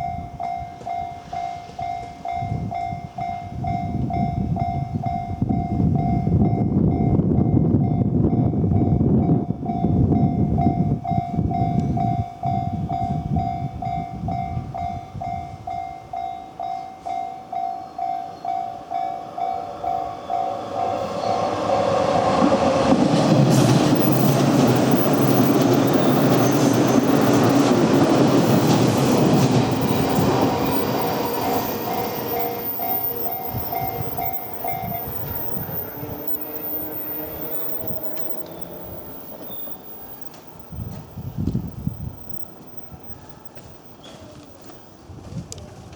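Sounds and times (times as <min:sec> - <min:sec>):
crossing warning bell ringing: 0:00.0 - 0:45.0
train rumbling past: 0:00.0 - 0:45.9
train wheel clatter: 0:20.8 - 0:44.9.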